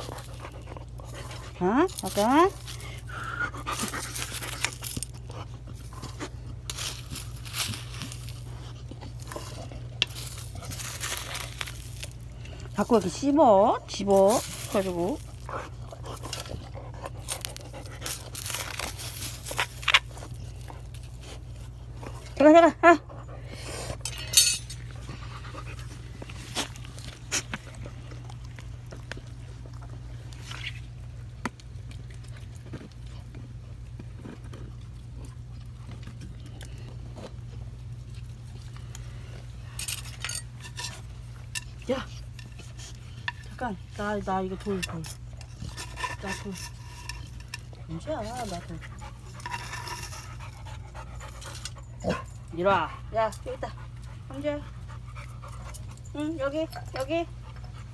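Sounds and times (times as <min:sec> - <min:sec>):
dog panting: 0:00.0 - 0:04.6, 0:47.7 - 0:57.9
dog chewing and tearing: 0:00.0 - 0:13.2, 0:14.0 - 0:22.4, 0:24.7 - 0:57.9
steady low hum: 0:00.0 - 0:57.9.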